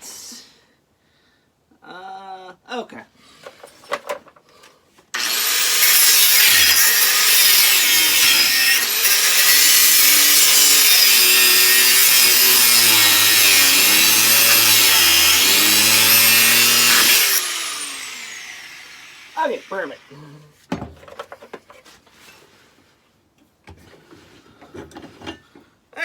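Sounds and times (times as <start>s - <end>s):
power tool grinding steel: 5.2s - 20.2s.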